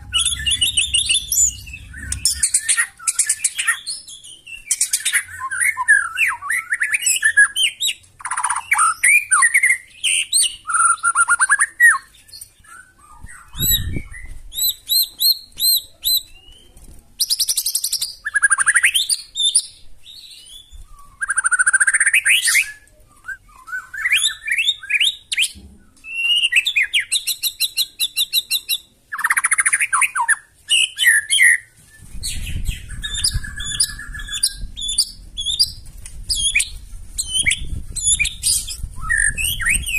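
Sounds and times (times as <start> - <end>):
low thump: 0.0 - 2.6
low rumble: 0.0 - 2.8
bird singing whistles and trills: 0.0 - 39.9.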